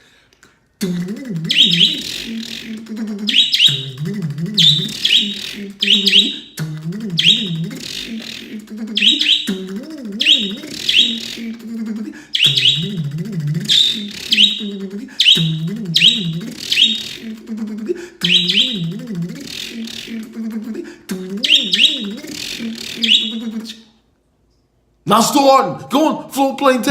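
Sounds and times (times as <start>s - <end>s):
bird chirping: 0.8s - 11.6s, 12.3s - 17.4s, 18.2s - 20.3s, 21.1s - 23.9s
man imitating engine cranking: 0.8s - 23.8s.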